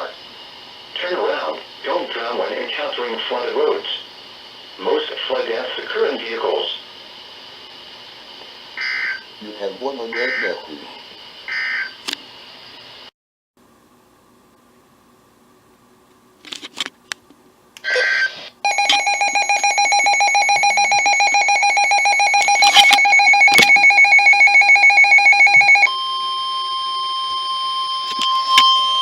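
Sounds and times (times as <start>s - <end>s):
rapidly pulsing alarm beep: 8.8s - 9.2s, 10.1s - 10.6s, 11.5s - 12.0s, 18.0s - 29.0s
screechy data burst: 8.8s - 9.4s, 10.1s - 10.7s, 11.4s - 12.0s, 17.9s - 25.9s
steady alarm tone: 8.8s - 10.7s, 11.4s - 12.0s, 17.9s - 29.0s
radio clicks: 22.3s - 23.9s.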